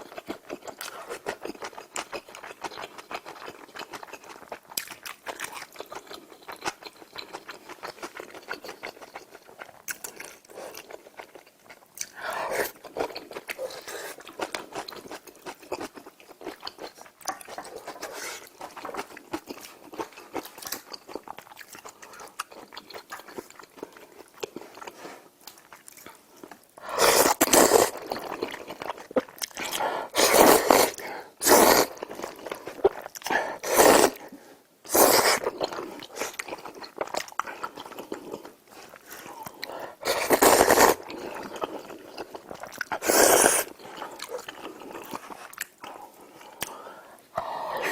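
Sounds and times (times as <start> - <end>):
chewing: 0.0 - 31.0, 35.2 - 47.9.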